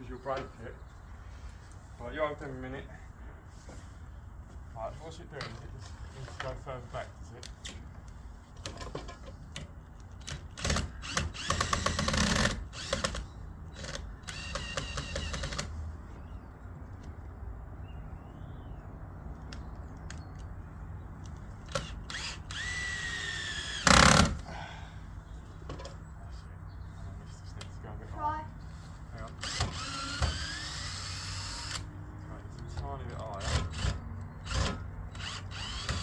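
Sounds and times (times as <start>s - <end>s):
power tool rapid clicking: 10.2s - 13.2s, 13.8s - 15.7s, 21.7s - 24.4s, 29.4s - 31.8s, 33.4s - 36.0s.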